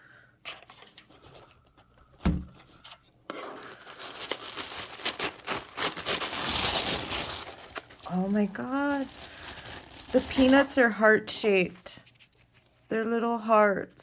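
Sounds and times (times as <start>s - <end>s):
packing material rustling: 0.5s - 12.9s
thump: 2.2s - 2.6s
cardboard tearing and clicking: 2.3s - 8.0s.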